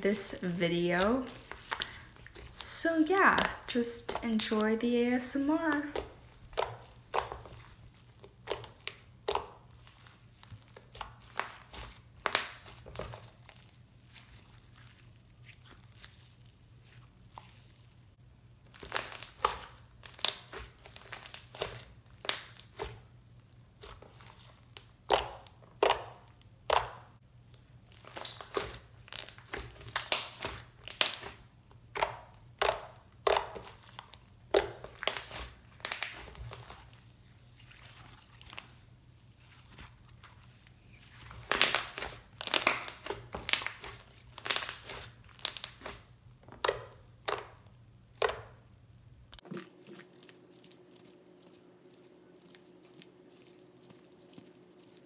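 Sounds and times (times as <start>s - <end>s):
slime crackling when squished: 18.7s - 22.9s, 27.9s - 37.0s, 40.4s - 47.6s.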